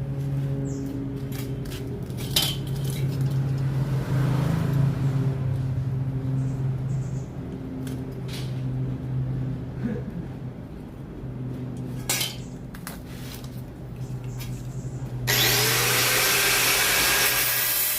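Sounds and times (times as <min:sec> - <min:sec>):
power tool whining: 0:15.3 - 0:17.9.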